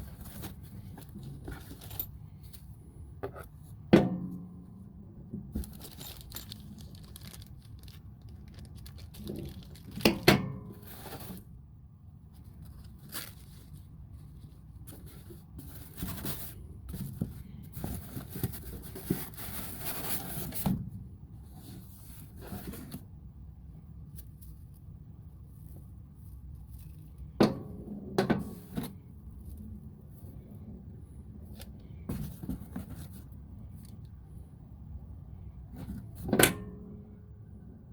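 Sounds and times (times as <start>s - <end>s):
packaging tearing and crinkling: 5.6s - 10.3s.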